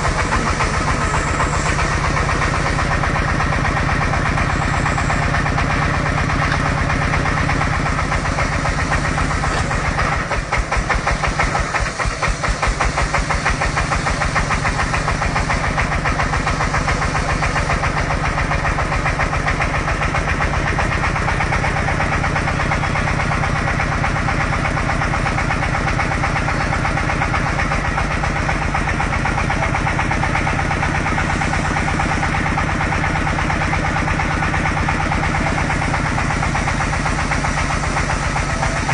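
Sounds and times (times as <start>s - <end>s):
drilling machine engine chugging: 0.0s - 38.9s.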